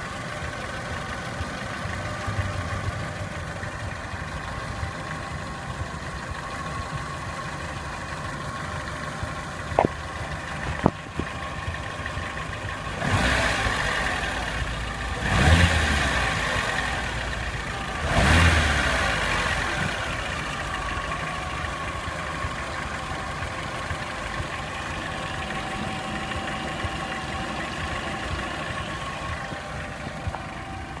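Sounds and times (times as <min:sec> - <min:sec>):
car engine idling and revving: 0:00.0 - 0:31.0.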